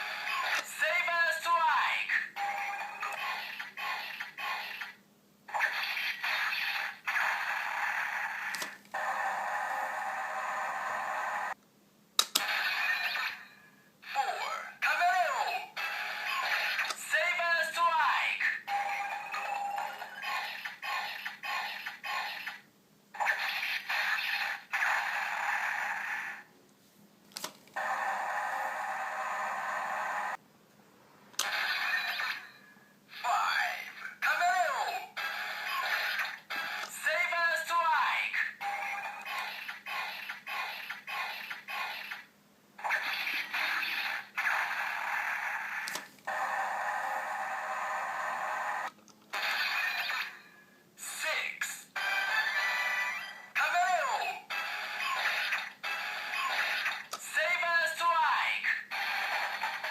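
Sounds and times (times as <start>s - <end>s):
toy electronic sound effects: 0.0s - 1.0s, 12.4s - 13.4s, 14.0s - 22.6s, 31.4s - 50.4s, 51.9s - 59.9s
toy sword electronic sound effects: 2.4s - 11.6s, 12.4s - 13.4s, 15.2s - 17.4s, 23.2s - 26.4s, 31.4s - 32.5s, 34.5s - 37.4s, 38.6s - 50.4s, 52.0s - 57.4s.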